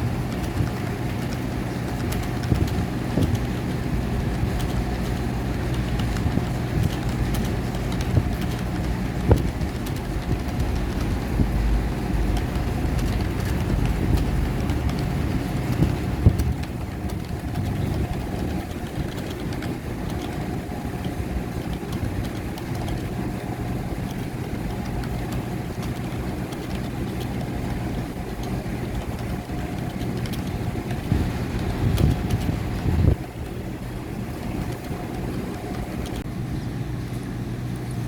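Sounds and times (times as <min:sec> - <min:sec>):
faint clicks: 0:00.3 - 0:11.4, 0:34.3 - 0:36.3.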